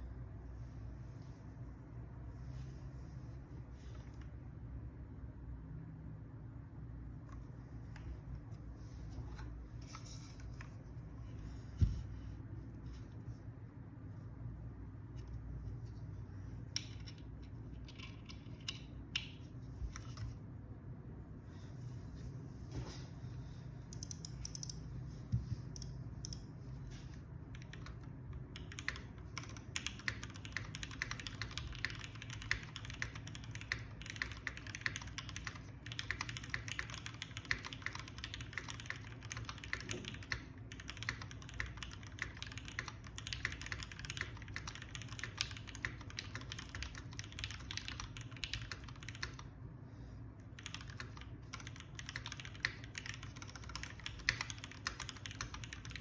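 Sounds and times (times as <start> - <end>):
mechanical keyboard typing: 23.9 - 24.9, 27.5 - 49.5, 50.5 - 56.0.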